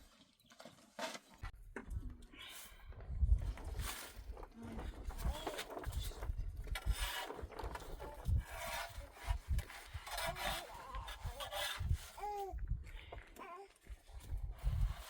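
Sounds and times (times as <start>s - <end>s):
rasping scraping strokes: 5.6s - 12.2s.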